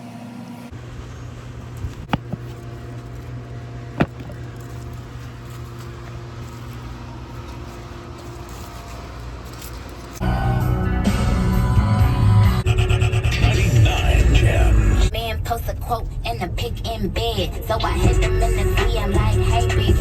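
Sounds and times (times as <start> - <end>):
low mechanical hum: 0.0 - 20.0
music: 10.2 - 15.1, 17.2 - 20.0.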